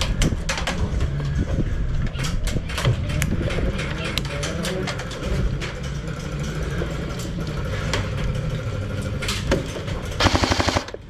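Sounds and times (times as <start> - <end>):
handling and movement rumble: 0.0 - 11.0
airsoft gun firing: 10.2 - 11.0.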